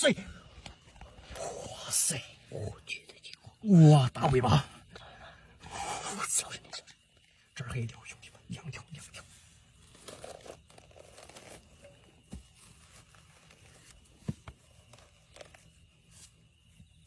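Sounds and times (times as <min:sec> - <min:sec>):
faint rustling and crinkling: 0:00.1 - 0:03.2, 0:07.0 - 0:17.0.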